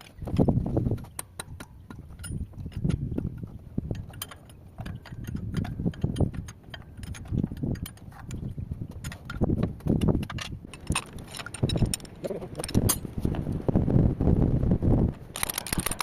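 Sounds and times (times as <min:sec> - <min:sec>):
hand tools clinking on engine parts: 0:00.0 - 0:13.1.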